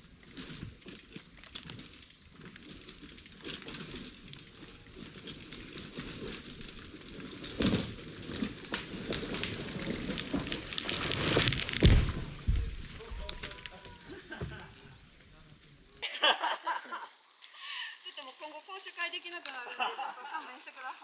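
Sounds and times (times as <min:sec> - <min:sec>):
branches crackling and snapping: 0:00.0 - 0:15.1, 0:17.0 - 0:20.9
heavy thud: 0:11.7 - 0:13.0.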